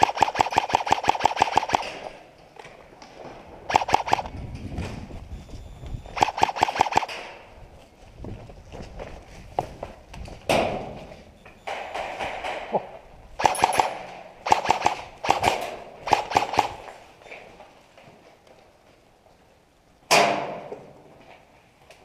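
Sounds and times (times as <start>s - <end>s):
airsoft gun firing full auto: 0.0s - 2.1s, 3.7s - 4.3s, 6.2s - 7.4s, 13.4s - 16.9s.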